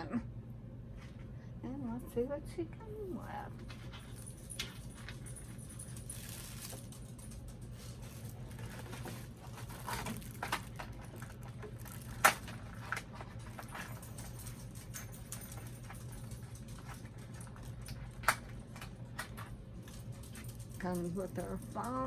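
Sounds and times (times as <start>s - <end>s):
steady low hum: 0.0s - 22.0s
plastic clicks and crinkles: 6.0s - 22.0s.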